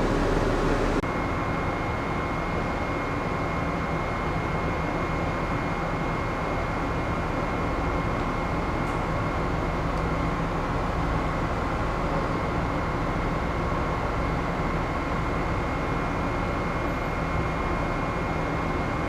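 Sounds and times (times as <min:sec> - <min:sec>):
high whine: 0:00.0 - 0:01.3
ship machinery drone: 0:00.0 - 0:19.0.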